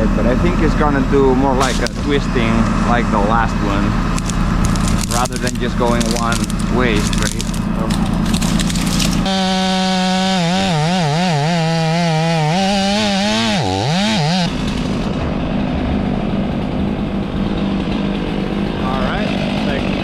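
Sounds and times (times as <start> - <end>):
chainsaw cutting wood: 1.6 - 2.5, 3.7 - 15.1.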